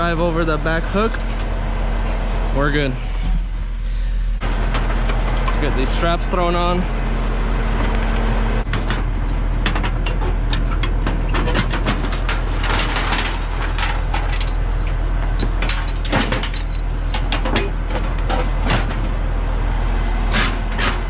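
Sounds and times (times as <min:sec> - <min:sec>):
truck engine idling: 0:00.0 - 0:21.0
metal clinks and rattles: 0:12.3 - 0:18.3.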